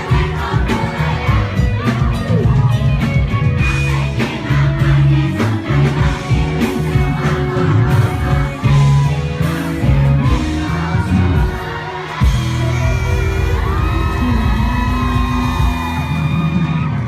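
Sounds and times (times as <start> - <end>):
person singing: 0.0 - 16.6
pop band playing: 0.0 - 17.0
whoops and cheering: 12.2 - 17.0.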